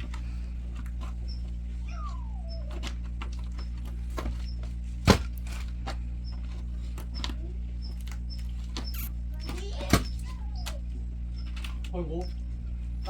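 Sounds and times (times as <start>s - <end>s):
faint high chirps: 7.1s - 11.5s.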